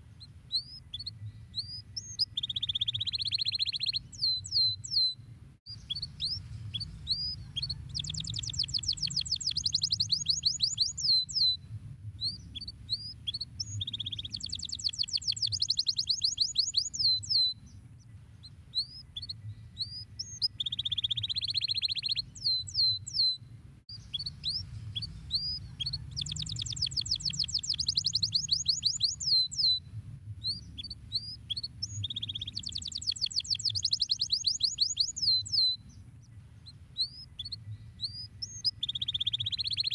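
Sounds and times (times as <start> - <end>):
canary singing trills: 0.0 - 11.6, 12.2 - 29.8, 30.4 - 39.9
steady low hum: 5.1 - 10.3.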